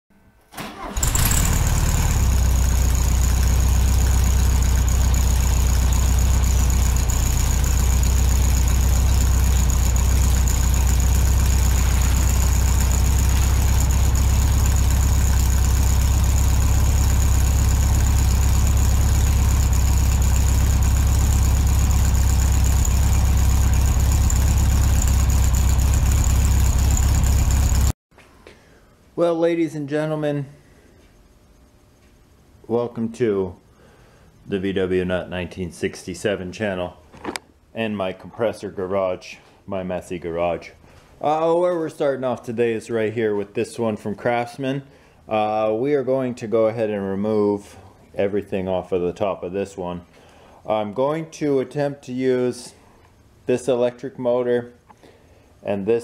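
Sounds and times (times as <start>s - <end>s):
air compressor humming: 1.0s - 27.9s
high whine: 2.2s - 27.9s.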